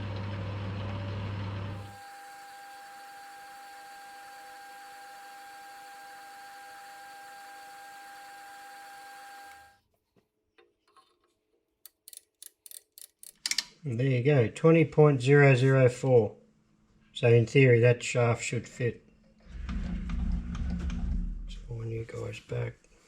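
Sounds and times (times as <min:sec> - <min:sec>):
metal lathe whining: 0:01.8 - 0:09.8.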